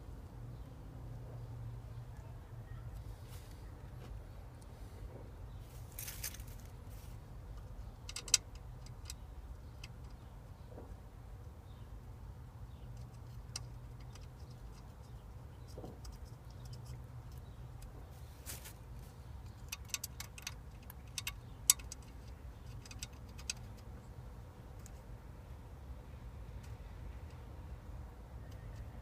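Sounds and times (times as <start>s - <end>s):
low steady hum: 0.0s - 29.0s
light clicks and metallic taps: 7.5s - 11.0s, 12.7s - 18.1s, 19.4s - 24.1s, 24.7s - 25.1s.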